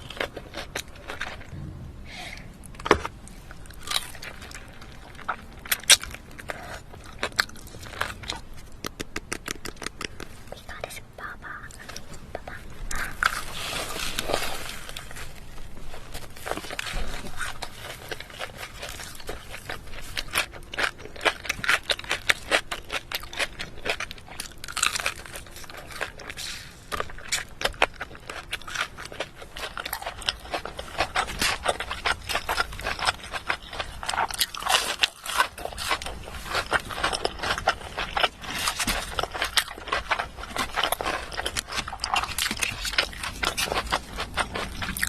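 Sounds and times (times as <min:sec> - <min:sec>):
crunchy food being chewed: 0:00.0 - 0:01.6, 0:02.8 - 0:45.0.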